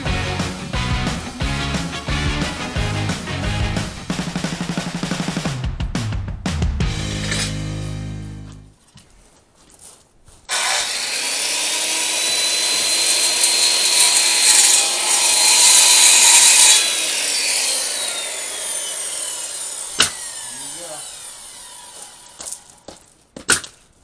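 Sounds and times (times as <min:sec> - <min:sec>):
electric saw cutting siding board: 0:00.0 - 0:05.4, 0:10.5 - 0:23.0.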